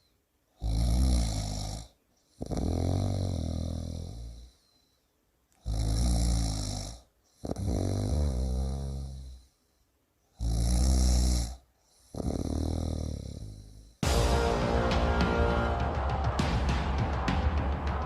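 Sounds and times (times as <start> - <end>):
person snoring: 0.6 - 4.8, 5.6 - 9.5, 10.4 - 14.1.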